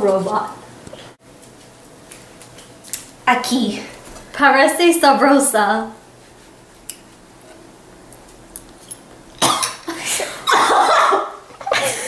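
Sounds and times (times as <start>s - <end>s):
person coughing and choking: 9.4s - 12.0s.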